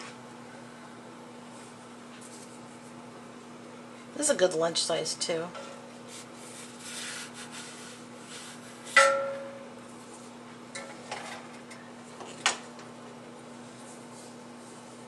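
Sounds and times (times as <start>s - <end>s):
steady low hum: 0.0s - 15.0s
kitchenware rubbing and rustling: 5.6s - 9.0s.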